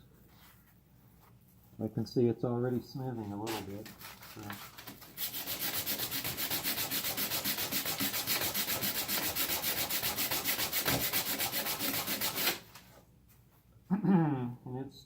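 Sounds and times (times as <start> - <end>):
sandpaper rubbing: 3.4 - 12.8.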